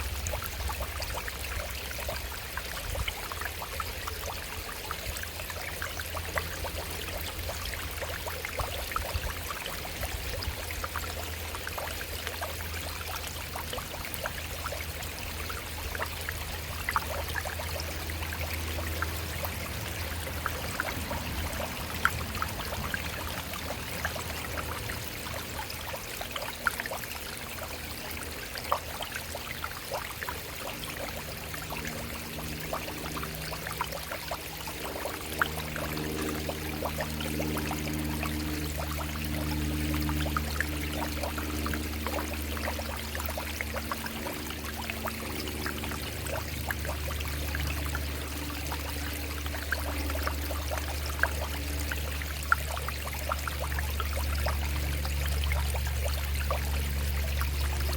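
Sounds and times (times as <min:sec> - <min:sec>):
faint low drone: 0:00.0 - 0:57.9
low steady hum: 0:00.0 - 0:57.9
stream running over rocks: 0:00.0 - 0:57.9.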